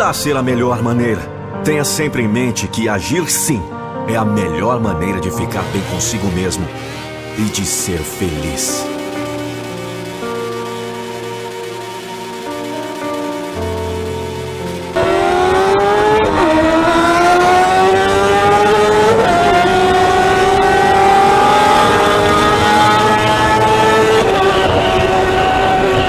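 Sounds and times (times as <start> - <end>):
motorcycle engine accelerating: 5.5 - 26.0.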